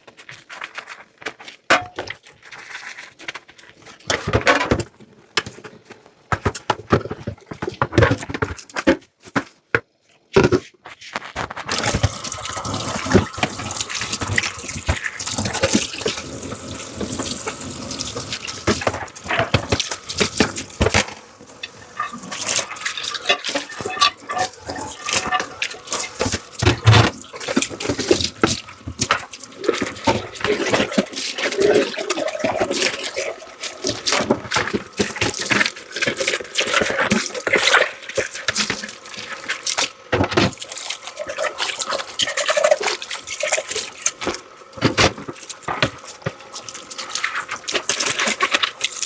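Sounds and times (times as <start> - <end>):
tap water running: 11.5 - 49.0
dishes clinking: 18.7 - 27.6.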